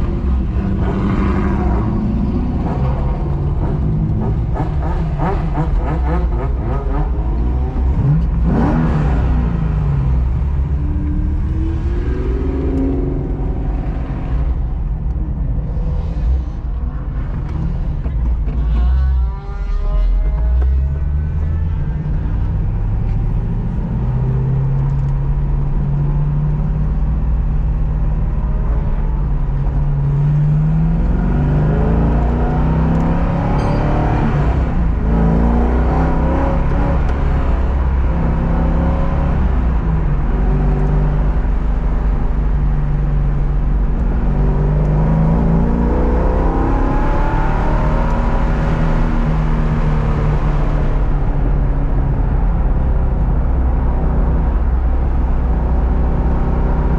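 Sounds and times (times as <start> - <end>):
steady low rumble: 0.0 - 32.5
car engine revving: 0.0 - 56.9.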